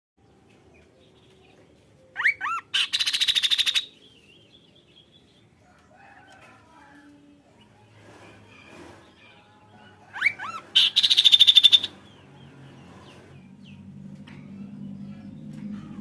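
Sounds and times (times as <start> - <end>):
bird whistling and rattling: 2.2 - 3.9, 10.2 - 11.9.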